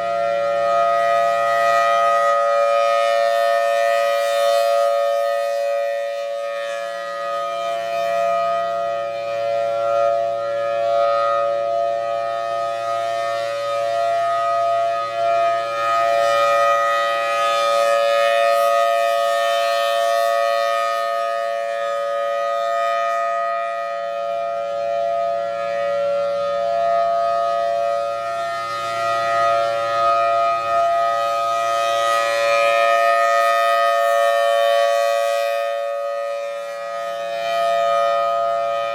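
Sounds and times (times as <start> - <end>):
warning siren two-note chord: 0.0 - 38.9.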